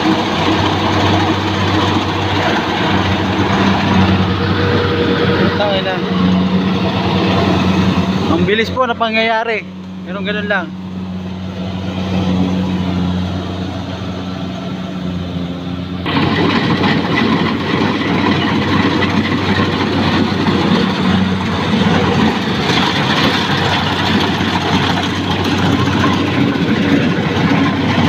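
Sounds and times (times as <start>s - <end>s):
dense rushing clatter: 0.0s - 9.6s, 16.0s - 28.0s
harvester engine humming: 0.0s - 28.0s.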